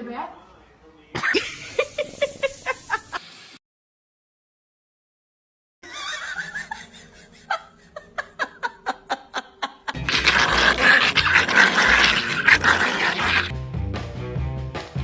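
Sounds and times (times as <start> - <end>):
loud laughter: 5.8 - 12.4.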